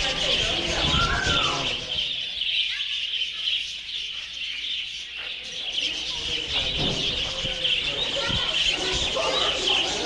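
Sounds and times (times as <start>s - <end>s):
small birds chirping and chattering: 0.0s - 10.0s.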